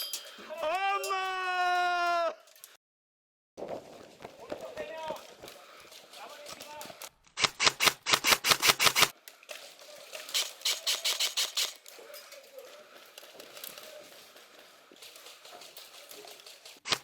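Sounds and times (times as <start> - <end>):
airsoft gun rapid shots: 7.4 - 9.1, 10.3 - 11.8.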